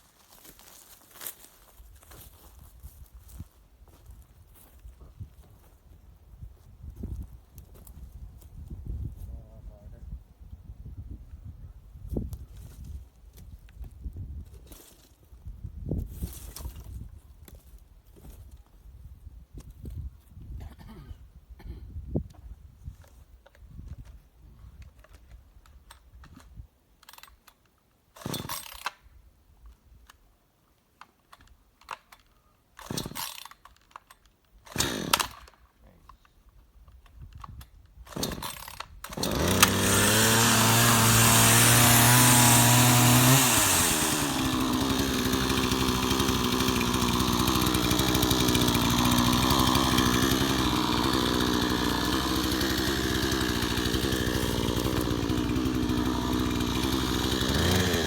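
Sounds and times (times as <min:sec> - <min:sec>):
chainsaw engine running: 0:34.7 - 0:35.4, 0:38.1 - 0:58.0
short rasping sounds: 0:38.1 - 0:58.0.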